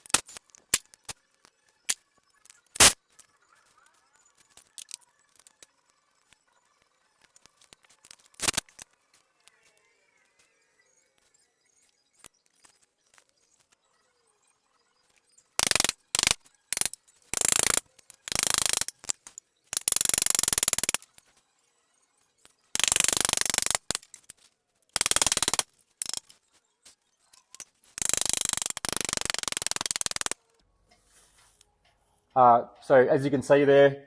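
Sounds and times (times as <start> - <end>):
impact wrench hammering: 8.4 - 8.7, 15.6 - 21.0, 22.8 - 24.2, 25.0 - 26.3, 28.0 - 30.4.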